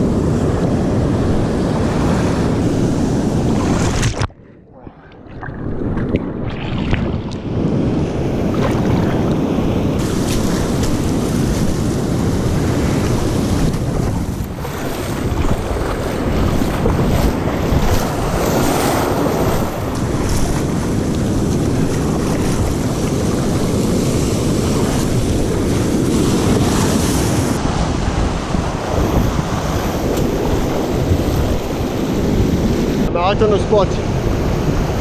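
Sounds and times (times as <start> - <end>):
wind buffeting microphone: 0.0 - 35.0
surf breaking over rocks: 8.3 - 33.8.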